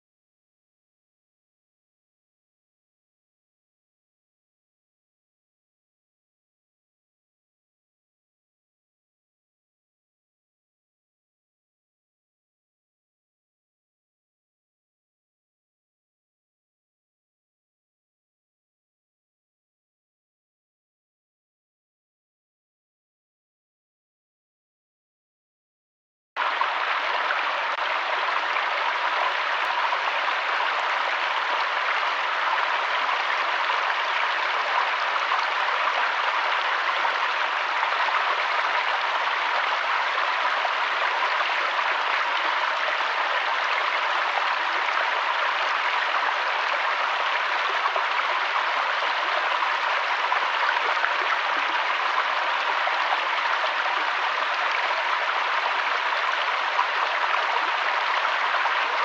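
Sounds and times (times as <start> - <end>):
flowing water: 26.4 - 59.0.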